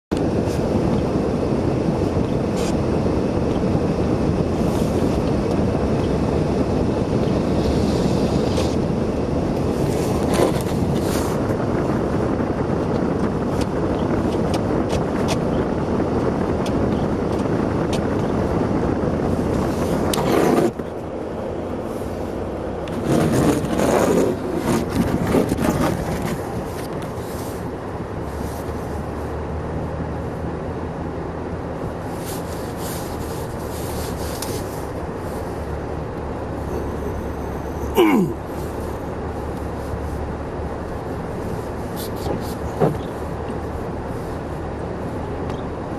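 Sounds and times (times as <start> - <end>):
tyre and road noise: 0.0 - 45.9
car engine humming: 0.1 - 45.9
rough scraping: 7.5 - 8.8, 9.6 - 11.5, 19.4 - 20.9, 22.9 - 27.7, 32.1 - 35.6.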